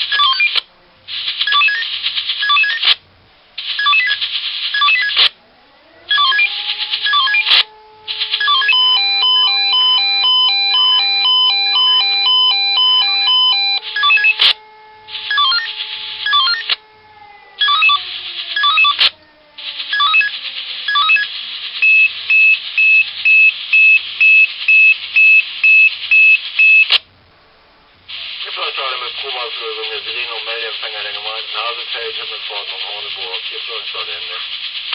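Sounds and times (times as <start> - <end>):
pager beep melodies: 0.1 - 0.6, 1.5 - 2.8, 3.8 - 4.2, 4.8 - 5.2, 6.1 - 7.6, 8.2 - 14.6, 15.2 - 16.8, 17.6 - 18.0, 18.6 - 19.0, 19.9 - 20.3, 20.9 - 26.9
siren steady tone: 4.8 - 27.0.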